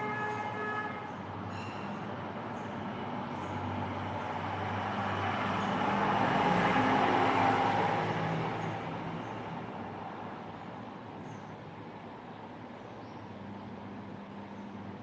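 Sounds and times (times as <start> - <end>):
vehicle passing by: 2.8 - 10.6.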